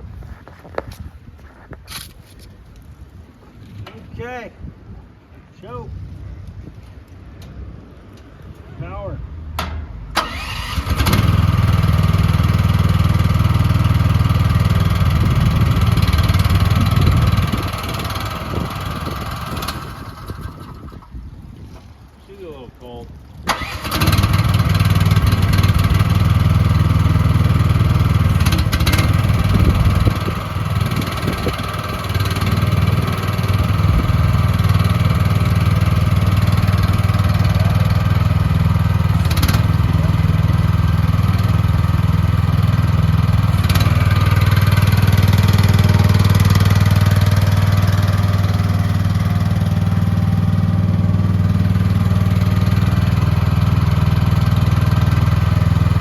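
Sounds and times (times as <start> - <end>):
small gasoline engine running: 10.2 - 21.1, 23.5 - 56.0.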